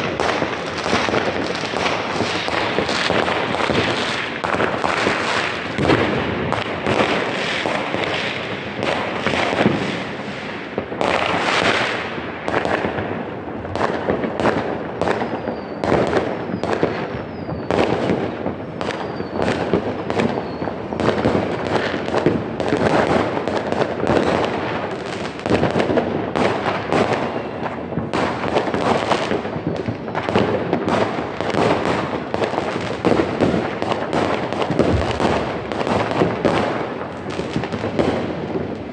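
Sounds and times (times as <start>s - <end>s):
fireworks bangs and crackling: 0.0s - 38.9s
faint falling whistles: 15.1s - 17.9s, 18.8s - 20.8s.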